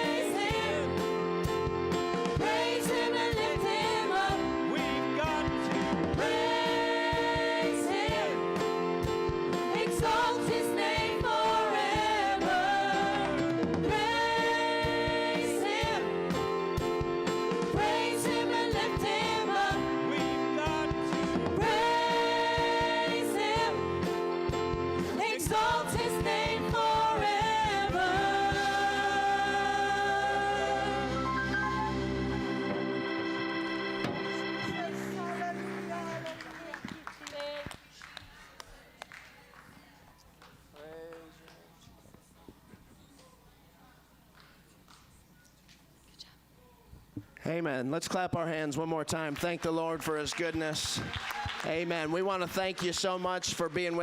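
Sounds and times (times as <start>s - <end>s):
group singing gospel song: 0.0s - 35.2s
instrumental accompaniment: 0.0s - 36.7s.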